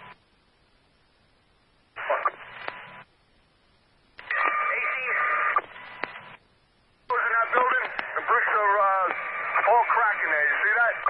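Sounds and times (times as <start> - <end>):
garbled radio transmissions: 2.0 - 3.1, 4.2 - 6.4, 7.1 - 11.0.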